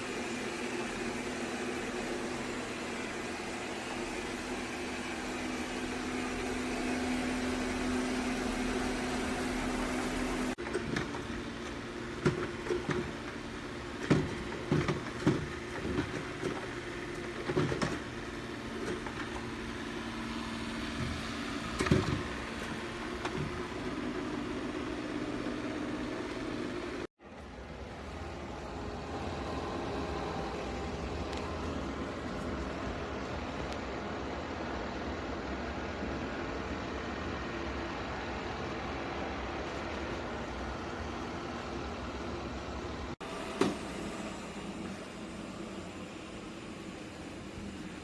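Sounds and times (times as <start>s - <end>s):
robot vacuum motor hum: 18.0s - 27.1s, 43.2s - 48.0s.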